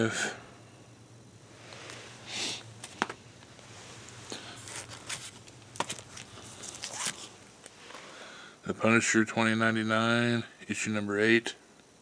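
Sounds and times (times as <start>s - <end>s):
comic books rustling: 4.4s - 8.0s.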